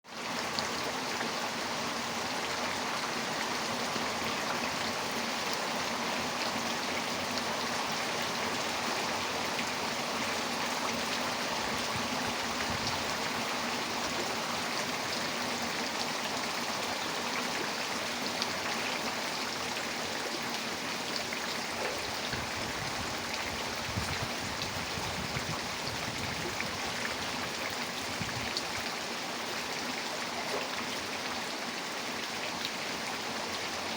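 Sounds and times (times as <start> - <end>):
strong wind gusts: 22.3 - 26.8.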